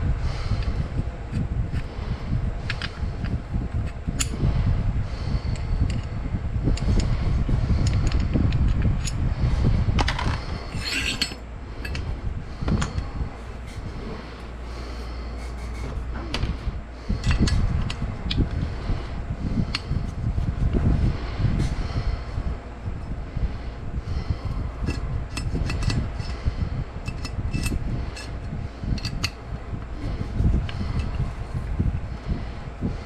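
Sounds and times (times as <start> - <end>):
steady low rumble: 0.0 - 33.0
metal parts clicking and clinking: 2.7 - 3.3, 10.0 - 12.0, 24.8 - 26.4, 27.0 - 28.4, 29.0 - 29.4.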